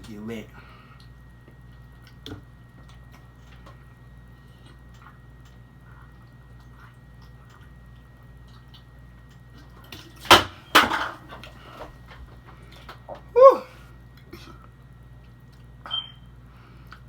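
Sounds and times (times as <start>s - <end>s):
loud knocks or clatters: 10.3s - 11.5s.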